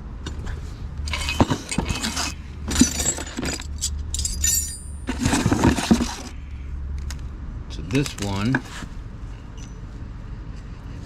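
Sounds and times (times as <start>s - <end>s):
steady low hum: 0.0s - 11.0s
metal parts clinking and rattling: 0.2s - 6.4s.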